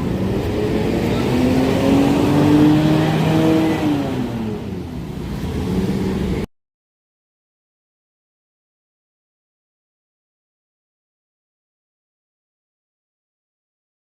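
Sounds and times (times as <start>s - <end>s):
bus engine accelerating past: 0.0s - 6.5s.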